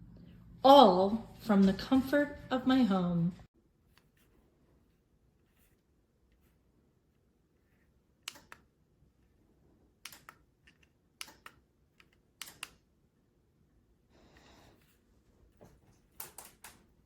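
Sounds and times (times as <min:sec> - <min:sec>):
remote switch clicking: 0:08.2 - 0:08.7, 0:10.0 - 0:12.8.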